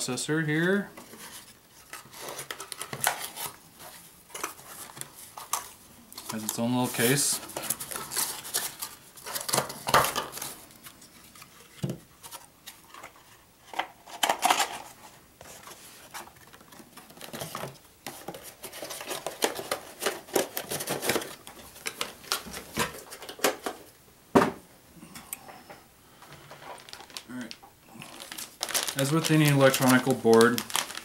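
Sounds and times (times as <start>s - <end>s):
plastic packaging clicks and rustling: 1.0s - 23.9s, 26.2s - 31.0s.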